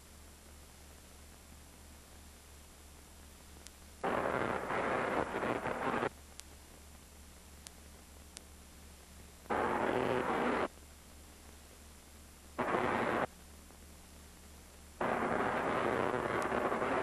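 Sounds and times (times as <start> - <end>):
low electrical hum: 0.0 - 17.0
tesla coil spark discharges: 4.0 - 6.1, 9.5 - 10.7, 12.6 - 13.3, 15.0 - 17.0.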